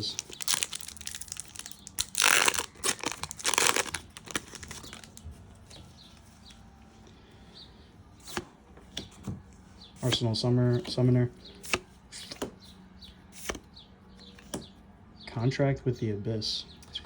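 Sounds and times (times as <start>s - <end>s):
foil pack tearing: 0.0s - 5.2s
cards handled with light clicks: 0.1s - 6.6s, 10.8s - 12.6s, 13.3s - 14.7s.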